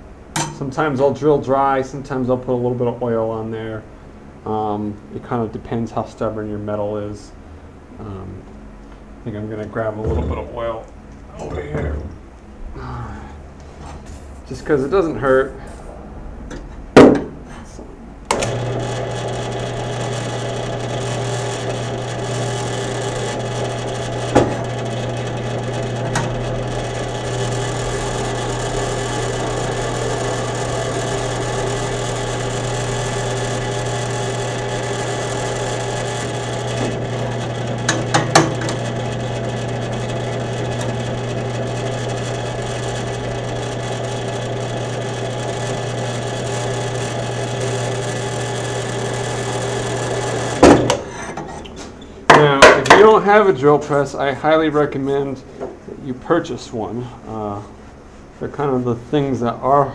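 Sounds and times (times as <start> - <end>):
drill press motor humming: 18.3 - 52.1.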